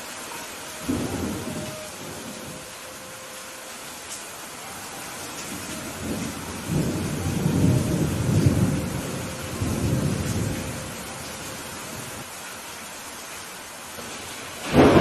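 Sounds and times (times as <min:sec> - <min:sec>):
steady rainfall: 0:00.0 - 0:15.0
low thunder rumbling: 0:00.8 - 0:02.9, 0:05.4 - 0:12.2, 0:14.6 - 0:15.0.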